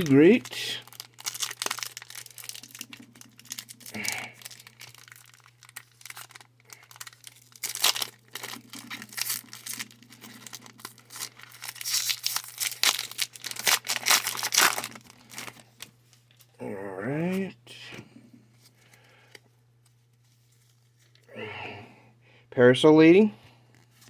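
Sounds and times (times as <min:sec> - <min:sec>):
foil wrapper crinkling and tearing: 0:00.0 - 0:16.5.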